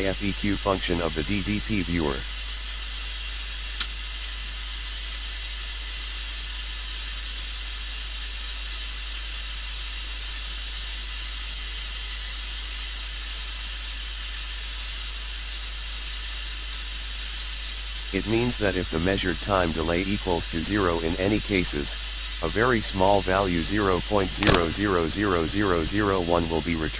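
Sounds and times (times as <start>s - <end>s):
white noise from loudspeaker: 0.0s - 9.1s, 17.7s - 26.9s
click: 3.8s - 4.0s, 24.3s - 24.6s.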